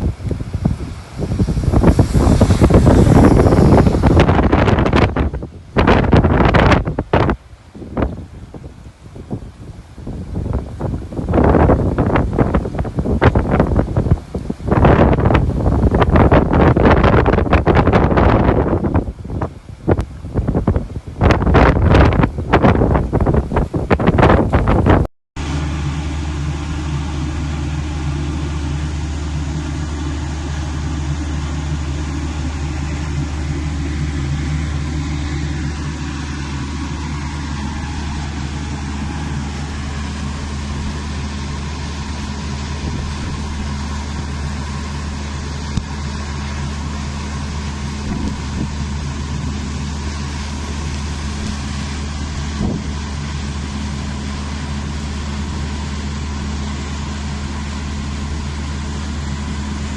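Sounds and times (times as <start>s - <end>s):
rushing hiss: 0.0s - 17.6s, 25.4s - 54.2s
low vehicle engine hum: 0.0s - 59.9s.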